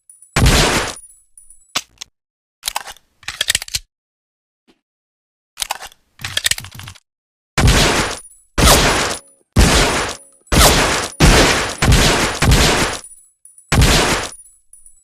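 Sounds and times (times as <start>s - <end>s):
pistol shots with ringing tail: 7.6s - 13.1s, 13.7s - 14.4s.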